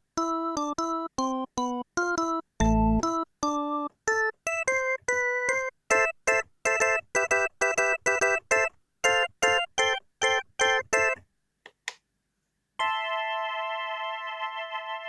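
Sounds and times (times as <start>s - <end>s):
synthesizer keyboard notes: 0.2s - 6.2s.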